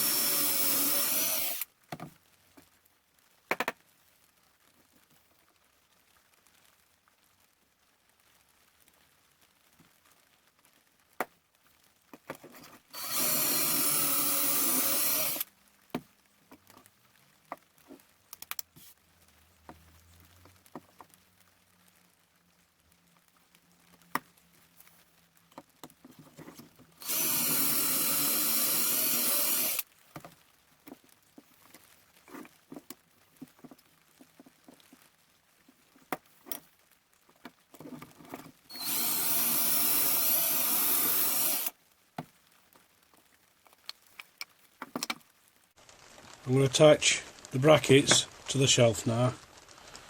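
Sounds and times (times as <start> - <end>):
power drill boring wood: 0.0 - 1.7, 12.9 - 15.5, 27.0 - 29.8, 38.7 - 41.7
clicks and knocks of handling wood: 43.1 - 45.3.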